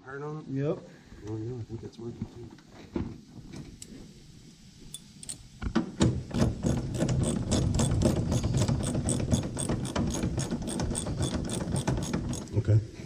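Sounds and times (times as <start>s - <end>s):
ratchet tool clicking: 6.6s - 12.6s.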